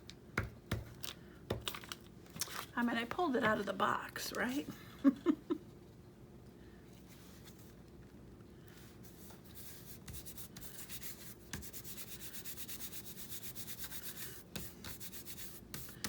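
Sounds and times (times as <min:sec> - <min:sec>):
rubbing strokes on paper: 0:08.8 - 0:16.0.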